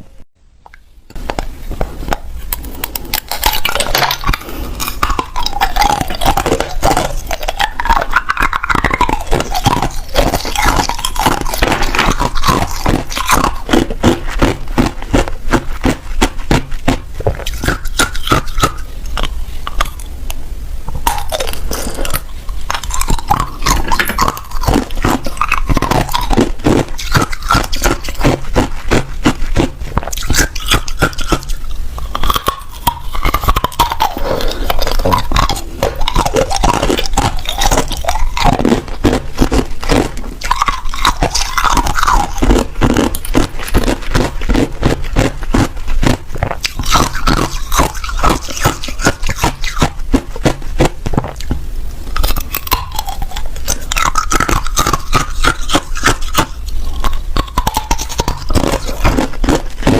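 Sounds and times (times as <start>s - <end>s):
ice crunching being chewed: 2.1s - 20.1s, 21.0s - 51.6s, 52.2s - 59.9s.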